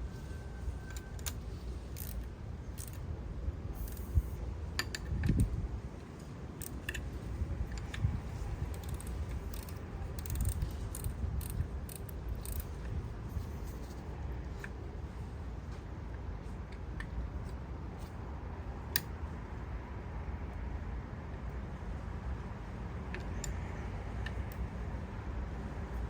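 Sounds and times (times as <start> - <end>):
metallic clicks of hand tools: 2.0 - 3.0, 8.7 - 13.0.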